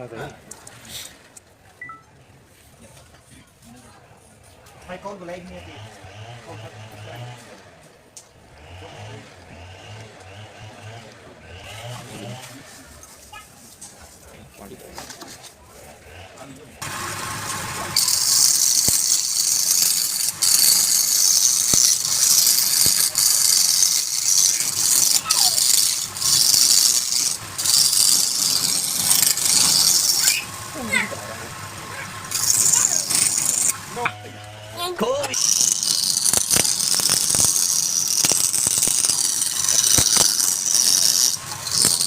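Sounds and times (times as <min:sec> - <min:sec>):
lathe tool shaving wood: 0:15.8 - 0:42.0.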